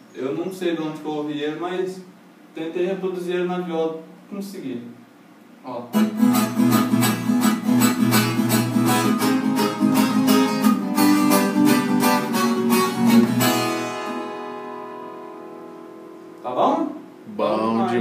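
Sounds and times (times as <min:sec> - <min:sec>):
folk guitar strummed: 0:05.9 - 0:16.5.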